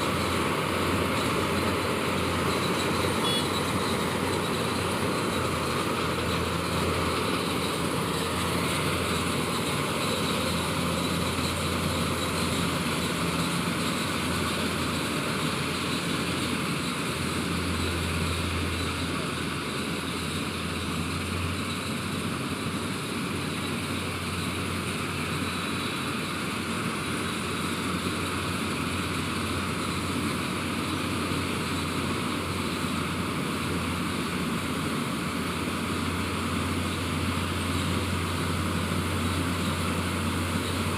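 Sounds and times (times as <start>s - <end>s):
combine harvester engine running: 0.0s - 40.9s.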